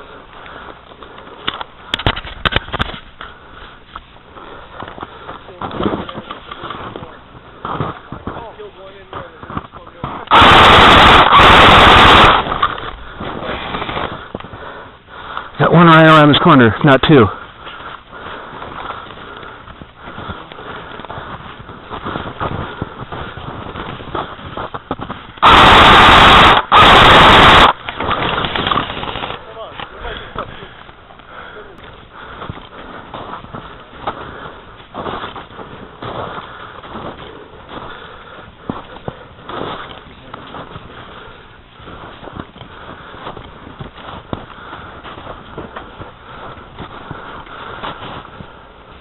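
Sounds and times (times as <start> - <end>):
crunching footsteps and clicks: 0.0 - 15.6, 16.2 - 49.0
full-auto airsoft rifle fire: 10.3 - 12.9, 25.4 - 29.4.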